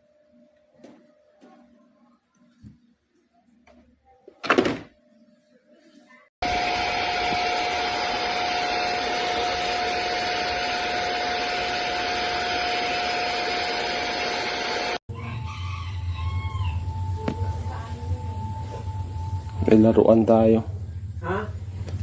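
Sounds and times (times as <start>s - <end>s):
handheld vacuum cleaner running: 6.4s - 15.0s.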